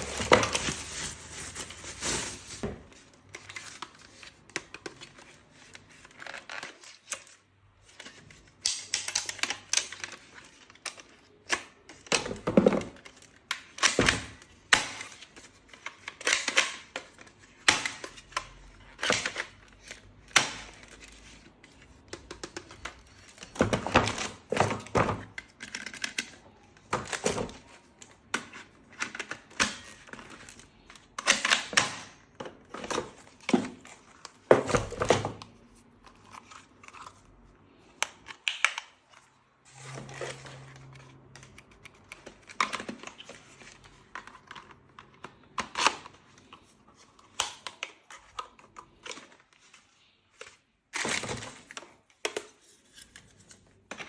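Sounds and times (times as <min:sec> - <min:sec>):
packaging rustling: 0:00.0 - 0:04.2.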